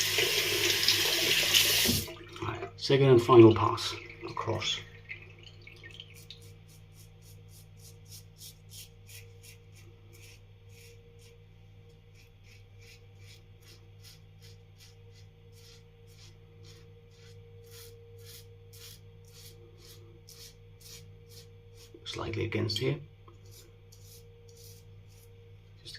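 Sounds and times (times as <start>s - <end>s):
razor scraping stubble: 6.7s - 11.4s, 12.1s - 22.1s, 23.4s - 25.3s.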